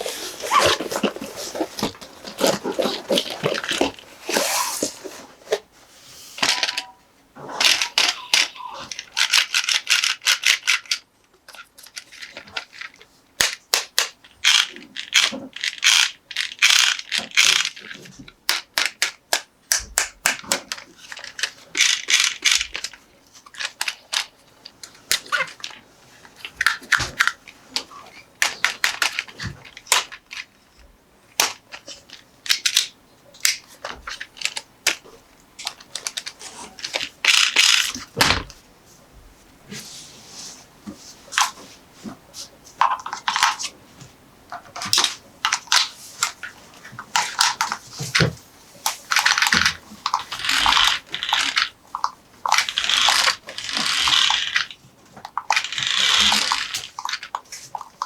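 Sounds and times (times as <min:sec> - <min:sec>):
packaging crinkling: 0:00.0 - 0:05.6
plastic toy clicks and rattles: 0:07.6 - 0:30.6, 0:31.4 - 0:38.4, 0:42.8 - 0:43.7, 0:44.6 - 0:48.3, 0:48.9 - 0:58.0.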